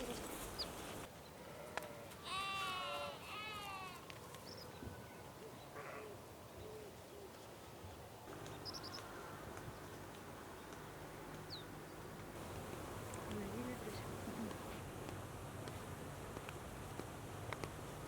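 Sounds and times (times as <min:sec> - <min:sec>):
farm animal bleating: 0:01.4 - 0:04.0.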